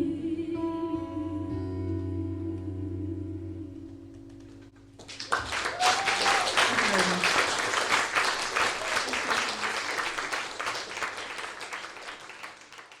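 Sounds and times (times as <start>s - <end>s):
audience applauding: 5.0s - 13.0s.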